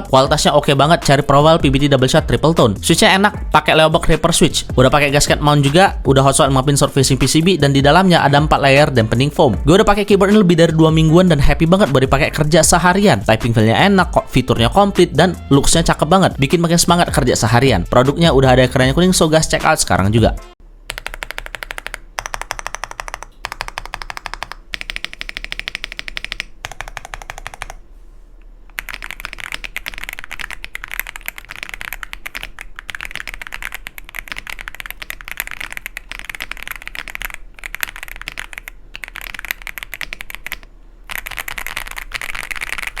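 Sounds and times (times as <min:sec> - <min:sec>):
mechanical keyboard typing: 0:20.9 - 0:27.8, 0:28.7 - 0:43.0.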